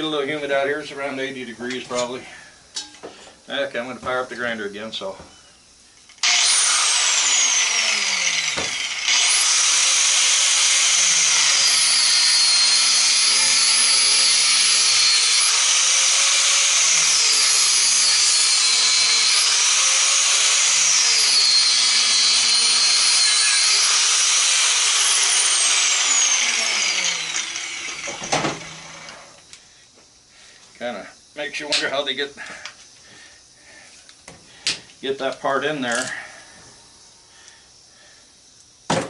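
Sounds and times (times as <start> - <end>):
angle grinder whining: 6.0 - 29.6.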